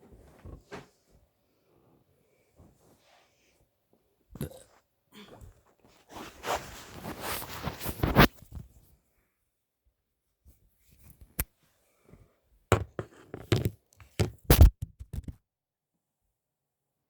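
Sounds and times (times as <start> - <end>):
knocks and thumps: 12.7 - 15.4.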